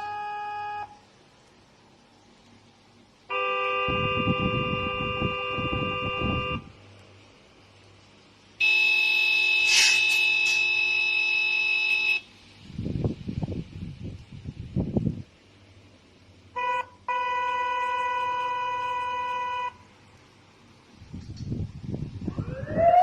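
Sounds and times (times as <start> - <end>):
electronic horn effect: 8.6 - 12.2
low engine rumble: 12.2 - 23.0.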